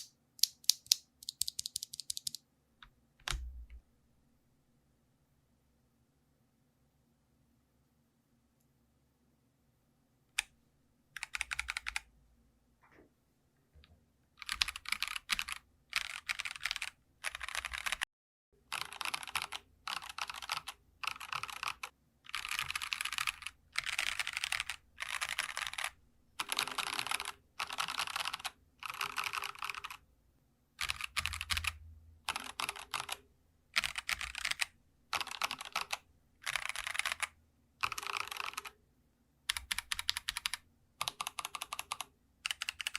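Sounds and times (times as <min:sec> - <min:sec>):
typing on mechanical keyboard: 0:00.0 - 0:02.4, 0:11.2 - 0:12.0, 0:14.4 - 0:18.0, 0:18.7 - 0:30.0, 0:30.8 - 0:33.2, 0:33.8 - 0:38.8, 0:39.5 - 0:42.9.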